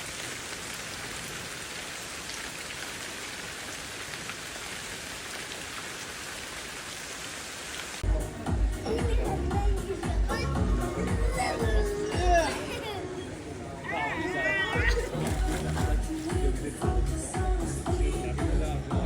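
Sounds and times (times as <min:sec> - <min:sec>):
steady rain hiss: 0:00.0 - 0:14.7
music with a beat: 0:08.0 - 0:12.4, 0:14.9 - 0:19.0
voices: 0:08.0 - 0:19.0.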